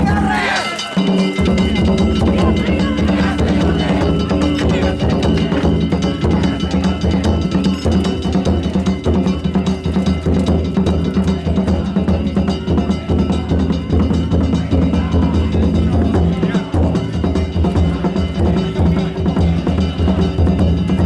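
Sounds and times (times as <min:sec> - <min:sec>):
hand gongs ringing: 0:00.0 - 0:11.0
taiko drum beating: 0:00.0 - 0:21.0.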